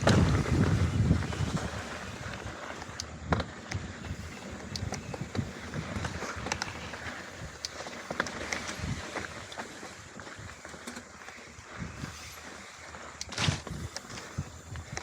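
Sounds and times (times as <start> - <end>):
wind on microphone: 0.0 - 7.7, 11.6 - 12.4, 13.2 - 15.0
bike rattling over bumps: 0.0 - 15.0
bike tyres on dirt trail: 0.0 - 15.0.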